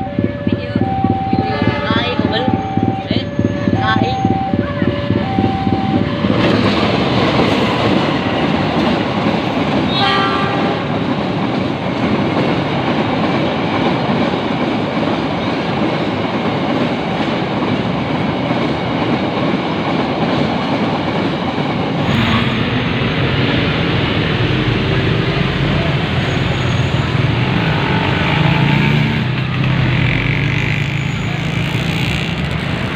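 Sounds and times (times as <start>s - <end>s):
train rumble and rail clatter: 0.0s - 32.9s
train horn: 9.9s - 11.0s.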